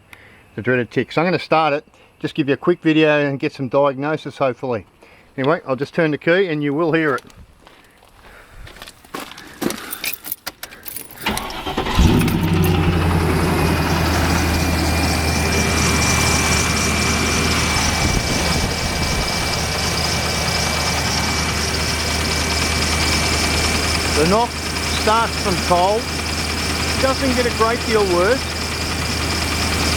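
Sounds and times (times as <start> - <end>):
car engine cranking and idling: 10.5 - 29.9
engine ticking knock: 11.9 - 29.9
thin high whine: 12.4 - 29.9.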